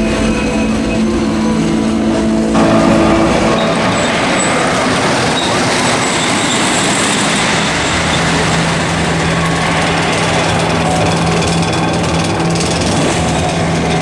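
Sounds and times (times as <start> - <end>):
roller coaster train on track: 0.0 - 14.0
low hum: 2.5 - 8.0.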